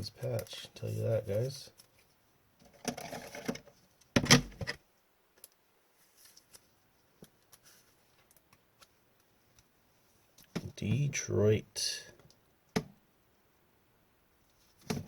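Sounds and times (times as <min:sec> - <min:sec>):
light clicks and rustles: 0:05.4 - 0:09.7.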